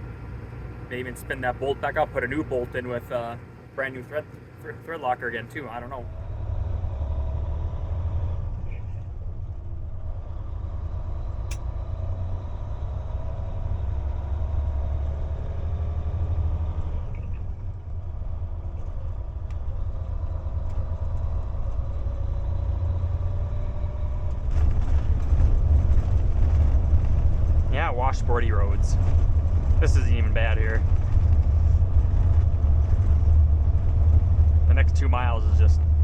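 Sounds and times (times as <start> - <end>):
truck engine and road rumble: 0.0 - 36.0
sharp click: 11.5 - 11.7.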